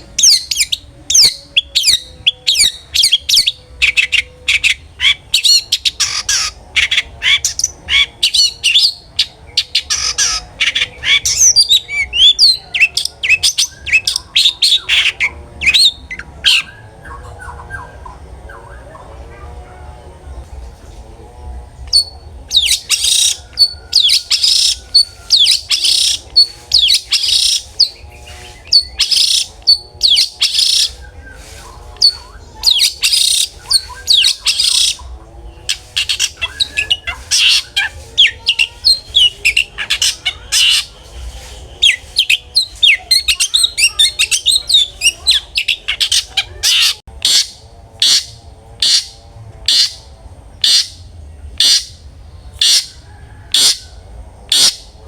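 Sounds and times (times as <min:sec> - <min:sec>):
bird singing harsh chattering notes: 0:00.0 - 0:19.2, 0:21.7 - 0:55.0.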